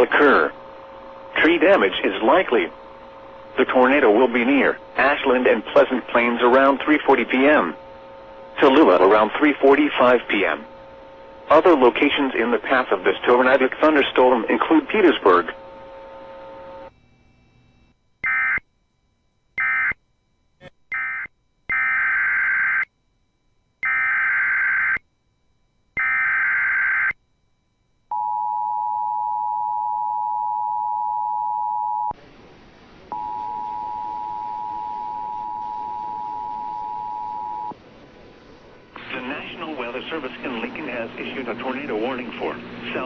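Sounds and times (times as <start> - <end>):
two-tone attention signal: 33.1 - 37.8.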